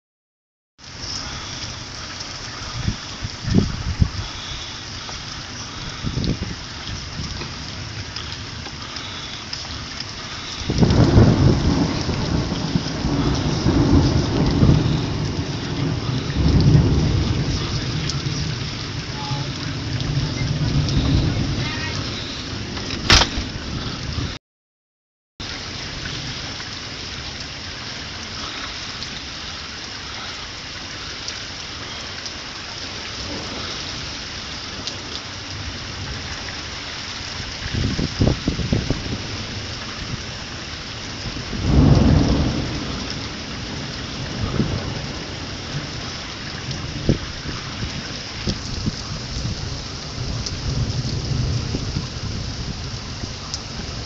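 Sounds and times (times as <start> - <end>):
steady rain falling: 0.8 - 24.4, 25.4 - 54.0
thunder rumbling: 1.0 - 24.4, 32.8 - 54.0.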